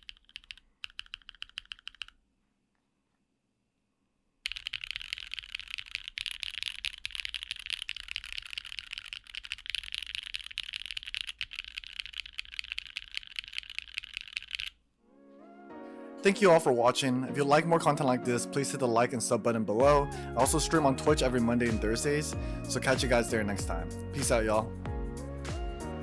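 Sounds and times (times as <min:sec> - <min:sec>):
typing on mechanical keyboard: 0:00.0 - 0:02.2, 0:04.4 - 0:14.8.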